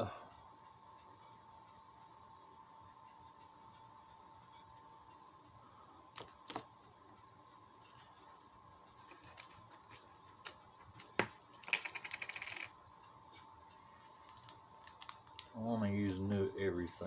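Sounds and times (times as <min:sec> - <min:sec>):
faint steady whine: 0:00.0 - 0:17.0
plastic parts clicking: 0:09.0 - 0:12.7, 0:14.2 - 0:16.4.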